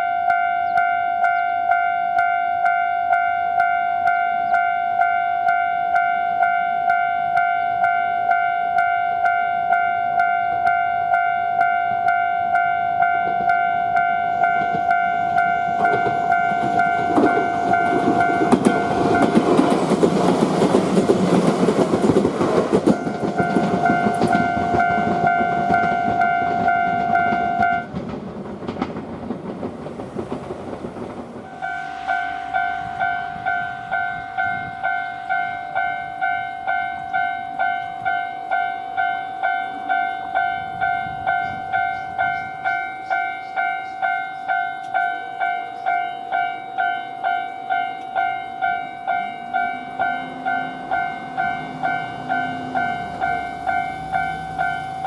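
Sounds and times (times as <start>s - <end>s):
crossing bell ringing: 0.0s - 27.9s, 31.4s - 55.0s
train wheel rumble: 11.9s - 55.0s.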